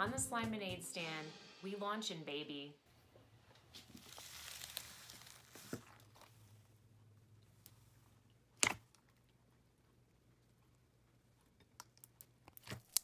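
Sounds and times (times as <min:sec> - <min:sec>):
slime crackling and tearing: 0:04.0 - 0:06.1, 0:11.8 - 0:13.0.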